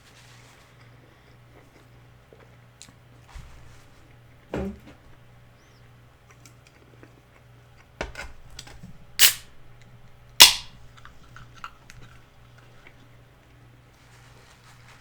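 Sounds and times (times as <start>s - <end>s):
crunchy food being chewed: 0.4s - 3.3s, 6.1s - 8.0s, 10.9s - 15.0s.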